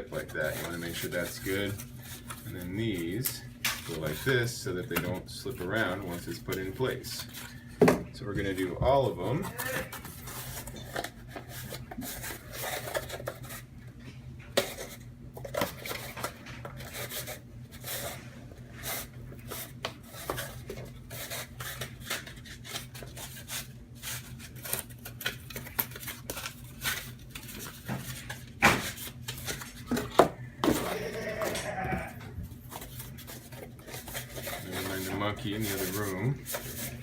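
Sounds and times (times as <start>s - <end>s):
cardboard being folded and creased: 18.8s - 37.0s.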